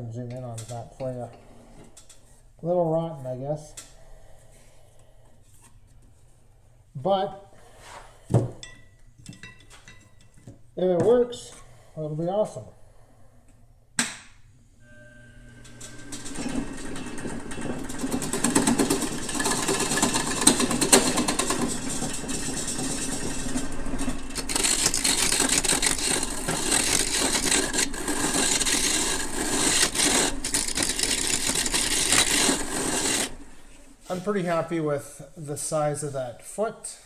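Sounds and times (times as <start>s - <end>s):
wood lathe humming: 14.8s - 33.9s
tool scraping spinning wood: 14.8s - 34.7s.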